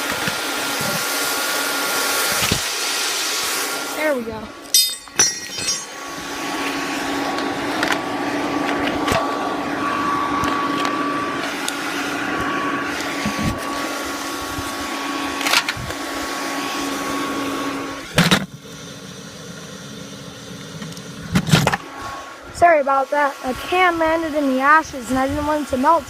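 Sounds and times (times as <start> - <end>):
hairdryer whirring hum: 0.0 - 26.0
steel poker clinking on cans: 4.7 - 6.0.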